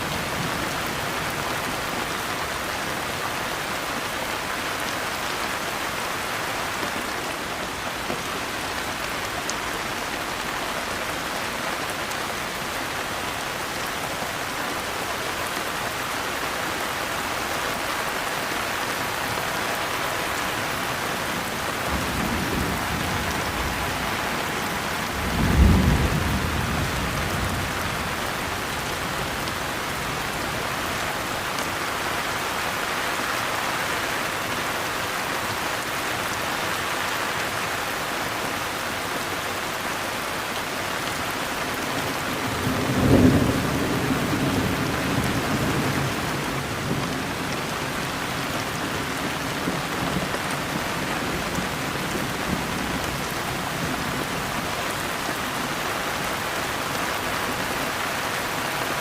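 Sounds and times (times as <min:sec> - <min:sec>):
steady rain: 0:00.0 - 0:59.0
thunder rumbling: 0:21.8 - 0:28.0.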